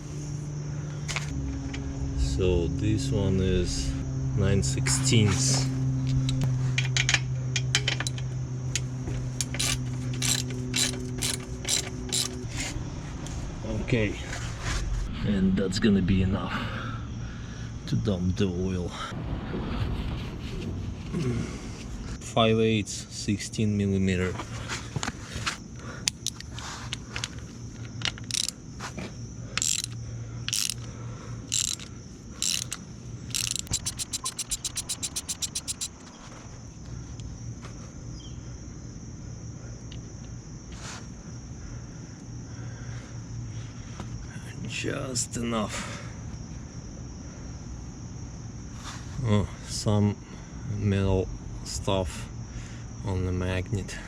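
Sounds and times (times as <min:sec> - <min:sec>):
steady low hum: 0:00.0 - 0:13.6, 0:29.6 - 0:36.0
ratchet wrench clicking: 0:09.4 - 0:12.5, 0:28.2 - 0:28.6, 0:29.6 - 0:30.9, 0:31.5 - 0:36.0
low hum: 0:31.5 - 0:35.9.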